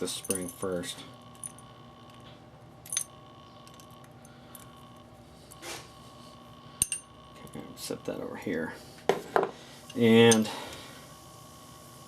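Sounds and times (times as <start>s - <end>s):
small metal parts clinking: 0.0s - 2.2s, 2.8s - 4.7s, 6.8s - 7.1s, 9.9s - 10.5s
faint steady hum: 0.0s - 12.0s.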